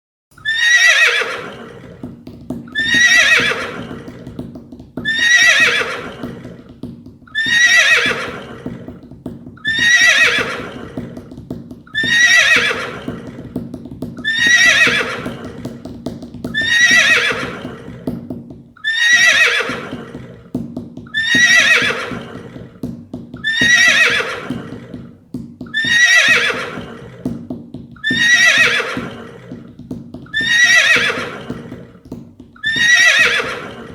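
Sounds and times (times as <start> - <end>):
horse whinnying: 0.4 - 13.6, 14.2 - 18.1, 18.8 - 33.9.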